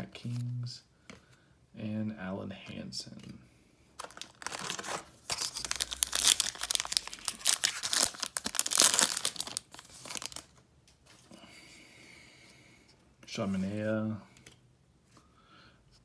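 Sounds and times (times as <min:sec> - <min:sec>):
wrapper tearing and crinkling: 0:04.0 - 0:10.6.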